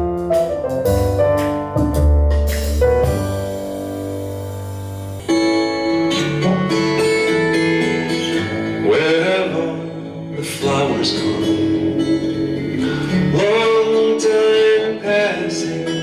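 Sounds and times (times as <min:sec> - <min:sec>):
piano piece: 0:00.0 - 0:09.2
acoustic guitar song with man singing: 0:05.3 - 0:16.0.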